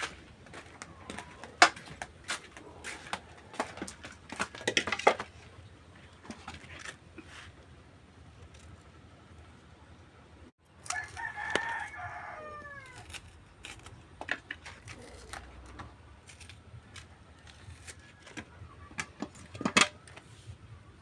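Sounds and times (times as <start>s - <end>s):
rooster crowing: 0.8s - 1.6s, 10.8s - 13.2s.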